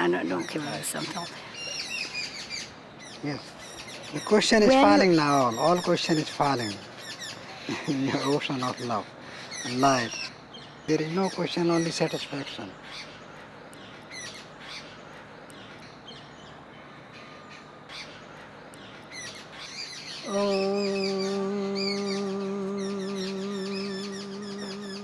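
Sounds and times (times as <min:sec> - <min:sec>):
small birds chirping: 0:00.0 - 0:25.0
long steady low tone: 0:20.2 - 0:25.0.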